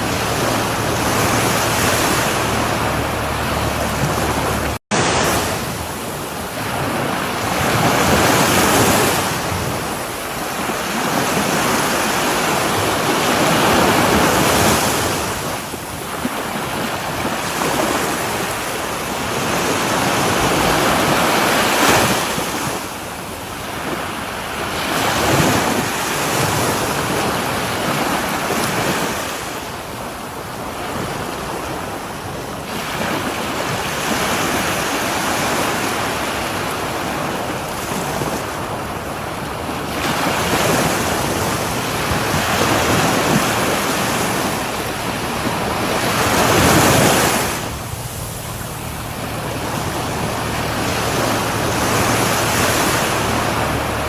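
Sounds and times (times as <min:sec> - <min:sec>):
ocean waves breaking on shore: 0:00.0 - 0:54.0.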